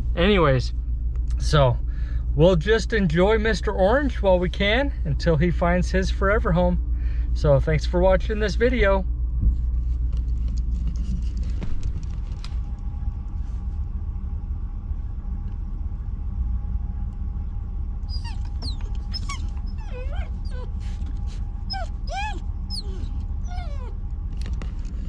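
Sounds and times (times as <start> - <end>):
truck rumbling: 0.0 - 25.0
puppy whimpering: 18.1 - 24.0.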